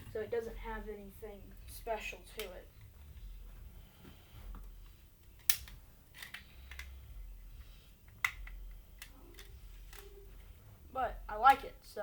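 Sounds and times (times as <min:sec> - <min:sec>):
hard plastic clicks: 0:05.2 - 0:07.0.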